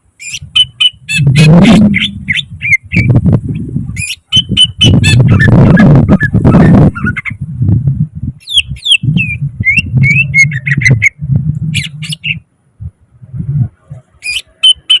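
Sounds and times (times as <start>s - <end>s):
bird singing whistled notes: 0.2s - 3.1s, 4.0s - 5.5s, 8.4s - 11.2s, 14.2s - 15.0s
low rumble: 0.4s - 4.0s, 4.6s - 8.4s, 9.0s - 14.2s.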